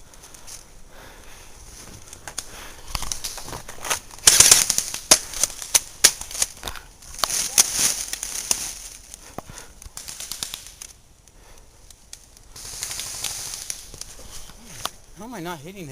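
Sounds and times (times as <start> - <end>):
rustling noise: 1.6 - 11.0, 12.5 - 15.0.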